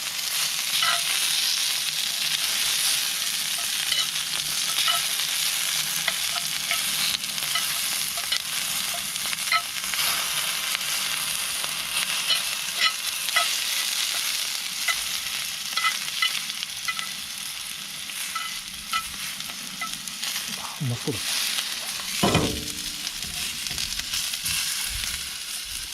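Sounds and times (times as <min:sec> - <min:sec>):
steak sizzling: 0:00.0 - 0:25.9
fat popping and crackling: 0:21.8 - 0:24.6.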